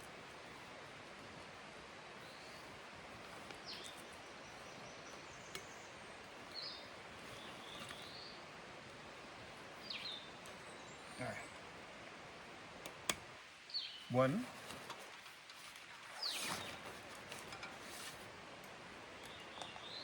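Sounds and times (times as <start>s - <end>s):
faint steady hiss: 0.0s - 20.0s.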